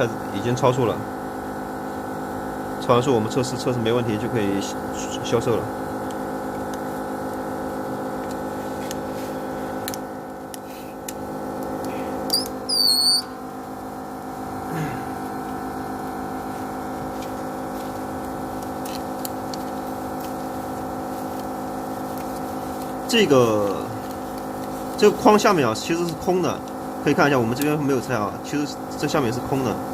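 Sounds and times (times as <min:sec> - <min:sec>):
machine hum: 0:00.0 - 0:29.9
shrill electronic beep: 0:12.3 - 0:13.4.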